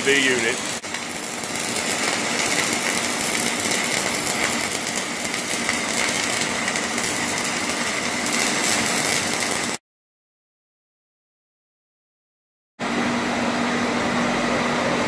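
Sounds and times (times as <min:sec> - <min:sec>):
extraction fan running: 0:00.0 - 0:09.8, 0:12.8 - 0:15.0
welding arc crackling: 0:00.0 - 0:09.8.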